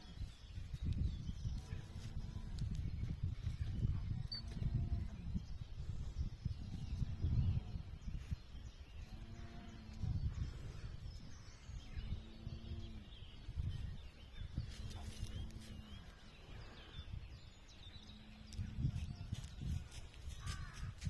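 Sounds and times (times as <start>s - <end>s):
small birds chirping: 0.0s - 21.0s
wind rumble on microphone: 0.0s - 21.0s.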